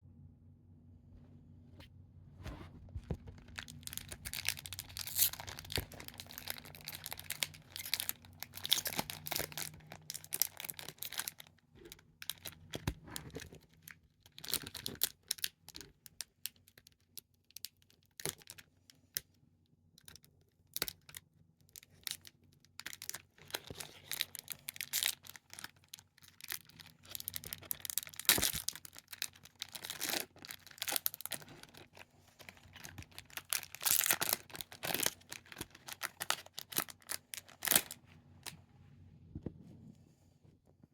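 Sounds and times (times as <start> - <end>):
card pack wrapper crinkling: 3.0 - 16.7, 21.8 - 38.5.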